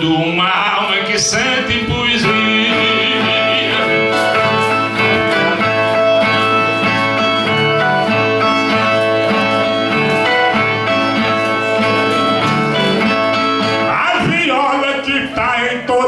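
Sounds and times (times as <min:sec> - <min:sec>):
steel-strung guitar plucked and strummed: 0:00.0 - 0:15.4.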